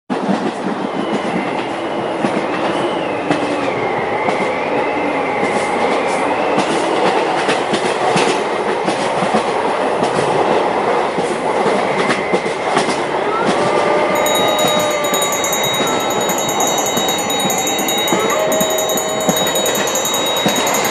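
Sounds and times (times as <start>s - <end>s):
train rumbling and rattling: 0.2s - 20.8s
high wavering whine: 14.1s - 20.9s
train wheel clicks: 14.2s - 20.9s.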